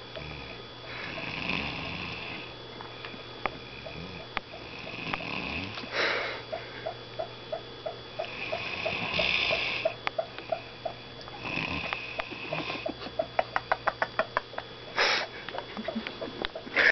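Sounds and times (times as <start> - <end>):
person snoring: 0.2 - 2.5, 3.6 - 6.5, 8.3 - 10.0, 11.4 - 12.8.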